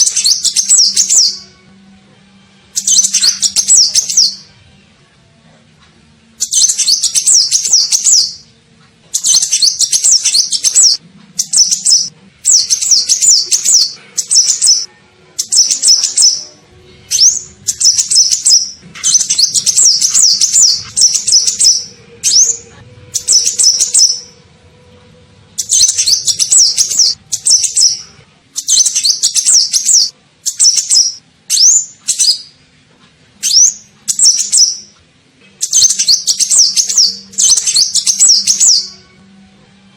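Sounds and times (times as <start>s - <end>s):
bird singing rapid twittering song: 0.0s - 1.4s, 2.8s - 4.5s, 6.4s - 8.5s, 9.1s - 16.5s, 17.1s - 24.4s, 25.6s - 28.0s, 28.6s - 32.5s, 33.4s - 35.0s, 35.6s - 39.0s.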